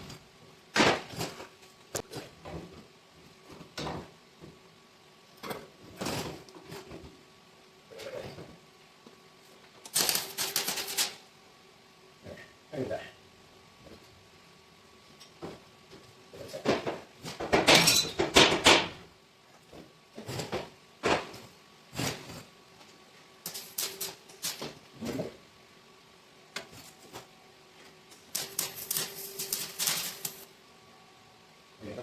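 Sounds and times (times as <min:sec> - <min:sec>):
welding crackle: 0:09.8 - 0:11.2, 0:23.4 - 0:24.8, 0:28.1 - 0:30.5.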